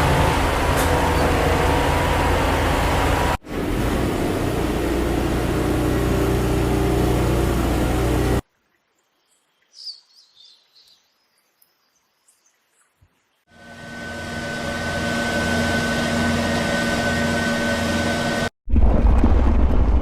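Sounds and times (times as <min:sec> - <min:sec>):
faint bird chirps: 0:08.6 - 0:13.4.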